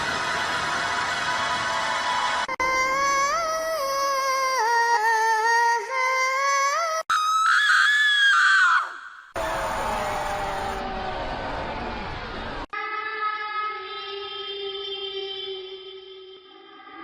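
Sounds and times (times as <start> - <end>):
high-pitched scream: 7.1 - 12.7
eerie wavering wail: 7.2 - 12.7
noisy sound effect: 9.4 - 12.7.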